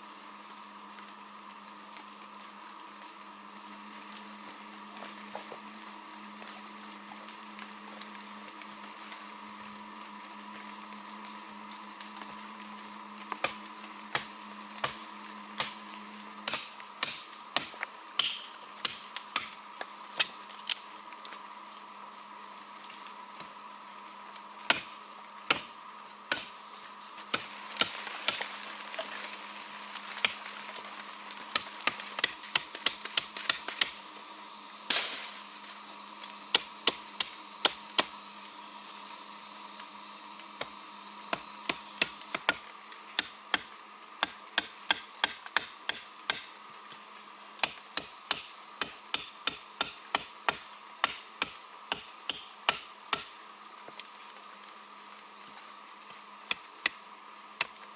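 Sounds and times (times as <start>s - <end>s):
steady hum: 0.0s - 57.9s
hand tool chopping wood: 13.4s - 15.0s, 15.6s - 15.8s, 16.4s - 19.6s, 24.7s - 24.9s, 25.5s - 25.7s, 26.3s - 26.5s, 27.3s - 28.5s, 31.5s - 34.0s, 41.3s - 46.5s, 47.6s - 53.3s.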